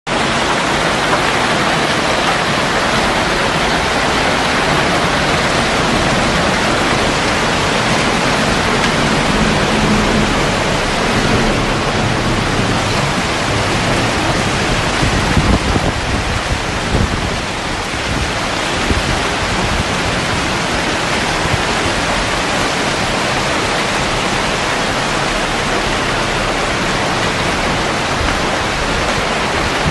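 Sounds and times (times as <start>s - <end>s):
heavy rain hiss: 0.1s - 29.9s
low thunder rumble: 0.2s - 29.9s.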